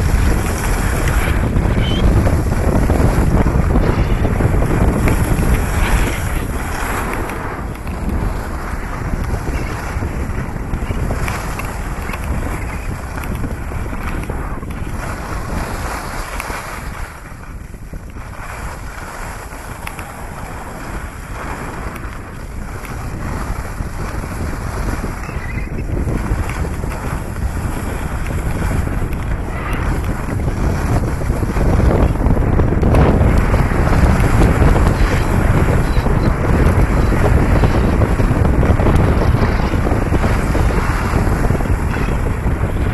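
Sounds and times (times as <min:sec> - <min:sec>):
wind buffeting microphone: 0:00.0 - 0:42.9.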